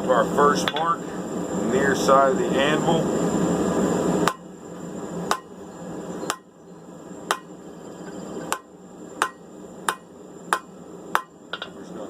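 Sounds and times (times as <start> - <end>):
hammer striking steel on anvil: 5.3 - 5.5, 8.5 - 11.7.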